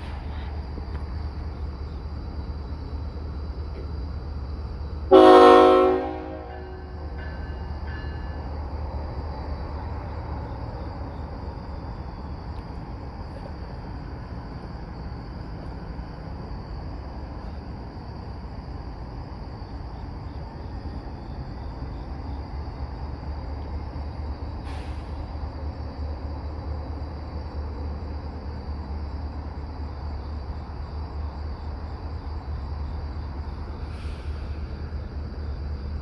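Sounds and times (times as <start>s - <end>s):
freight train rumble: 0.0s - 36.0s
insects trilling: 0.0s - 36.0s
brief hiss: 24.6s - 25.4s, 33.8s - 34.9s.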